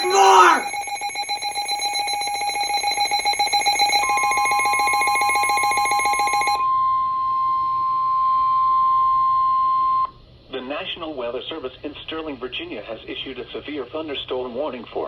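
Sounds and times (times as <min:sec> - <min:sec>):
steady warning alarm tone: 0:00.0 - 0:06.6
two-tone pulsing alarm: 0:00.0 - 0:07.2.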